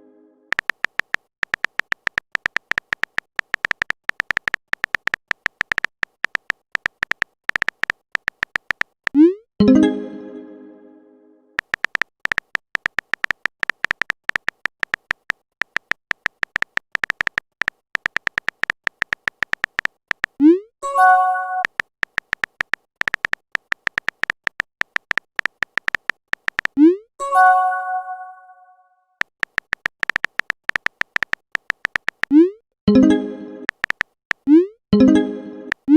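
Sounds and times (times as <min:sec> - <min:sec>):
phone keyboard clicks: 0:00.5 - 0:09.2, 0:11.6 - 0:20.5, 0:21.6 - 0:26.8, 0:29.2 - 0:32.4, 0:33.6 - 0:34.6, 0:35.7 - 0:35.9
message notification swoop and chime: 0:09.6 - 0:10.6, 0:20.9 - 0:21.7, 0:27.3 - 0:28.7, 0:32.9 - 0:33.7, 0:35.0 - 0:35.7.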